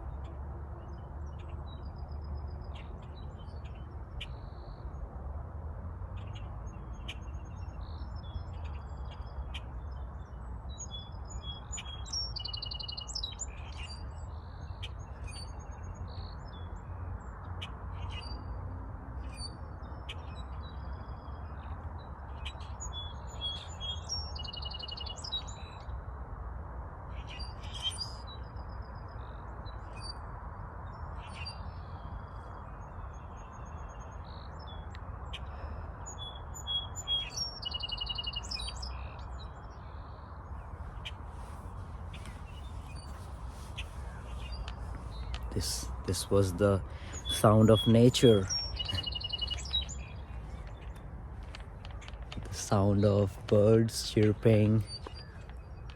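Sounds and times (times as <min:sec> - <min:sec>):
birds chirping and calling: 0:31.2 - 0:55.9.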